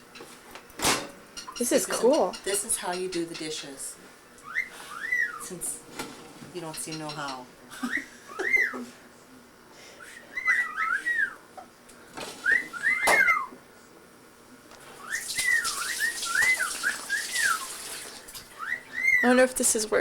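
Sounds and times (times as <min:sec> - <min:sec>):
person whistling: 0:12.4 - 0:13.4
water running from a tap: 0:15.0 - 0:18.6.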